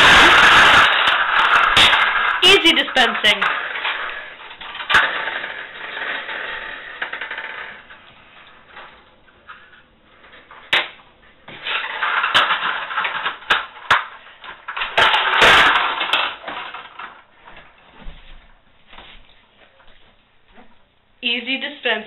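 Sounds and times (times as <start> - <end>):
gumball machine rattling: 0.0 - 7.9, 11.7 - 17.2.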